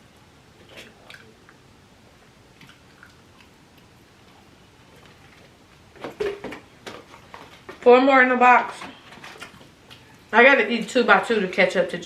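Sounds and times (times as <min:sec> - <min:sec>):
person chewing food: 0:02.5 - 0:05.6.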